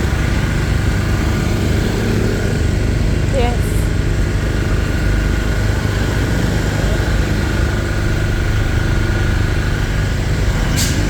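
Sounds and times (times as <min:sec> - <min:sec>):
car and motorbike engines passing: 0:00.0 - 0:11.0
low traffic rumble: 0:00.0 - 0:11.0.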